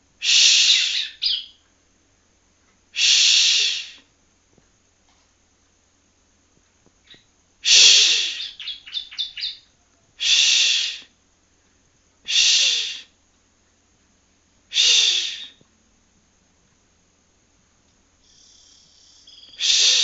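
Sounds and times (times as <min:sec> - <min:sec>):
harsh hissy bird calls: 0:00.0 - 0:01.6, 0:02.9 - 0:04.1, 0:07.0 - 0:11.2, 0:12.2 - 0:13.2, 0:14.7 - 0:15.6, 0:18.2 - 0:20.0
short bird chirps: 0:00.3 - 0:01.6, 0:07.8 - 0:09.7, 0:18.2 - 0:20.0.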